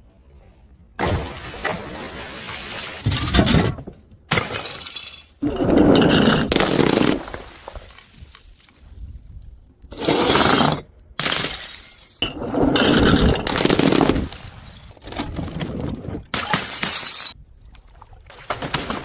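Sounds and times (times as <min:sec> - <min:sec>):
glass bottles shattering: 0:04.3 - 0:08.0, 0:11.2 - 0:15.0, 0:16.4 - 0:17.4.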